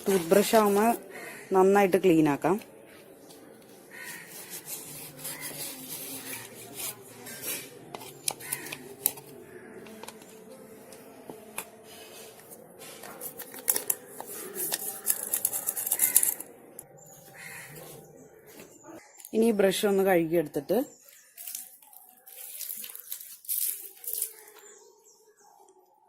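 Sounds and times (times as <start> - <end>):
toothbrush scrubbing a jar: 3.9 - 9.3, 12.0 - 16.5, 21.1 - 24.8.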